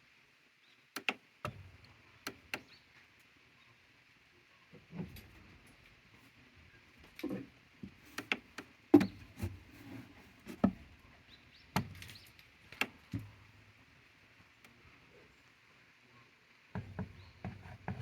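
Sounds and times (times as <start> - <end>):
goats knocking on wood: 9.0 - 9.6, 16.8 - 18.0.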